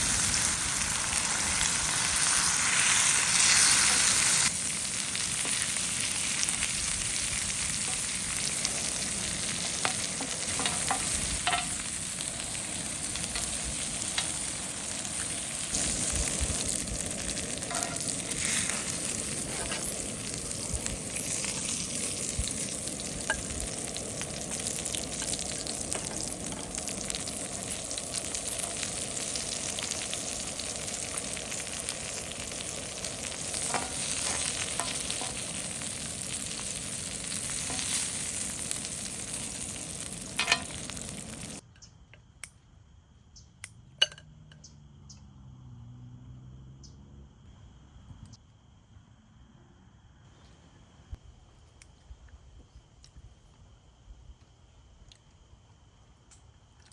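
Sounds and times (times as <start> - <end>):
food sizzling in a pan: 0.0 - 41.6.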